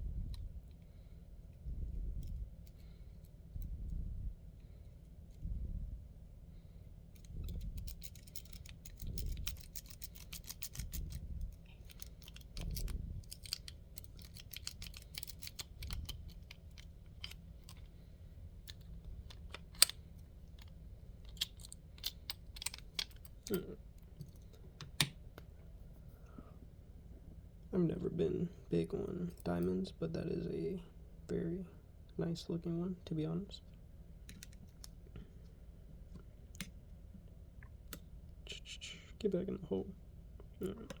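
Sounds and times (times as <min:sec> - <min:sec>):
lock pick clicking and scraping: 0:07.2 - 0:18.0, 0:18.6 - 0:23.6.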